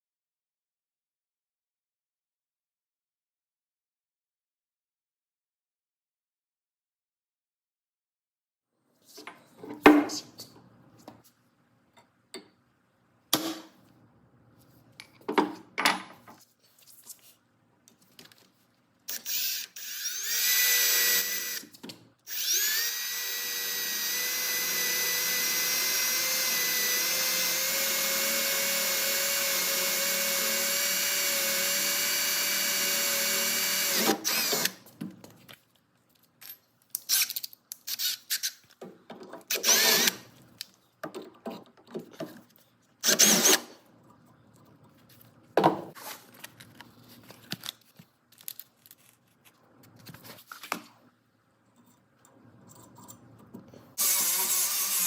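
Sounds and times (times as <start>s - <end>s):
power drill spinning: 19.1s - 21.7s, 22.3s - 34.8s, 39.5s - 40.2s, 43.0s - 43.7s, 54.0s - 55.0s.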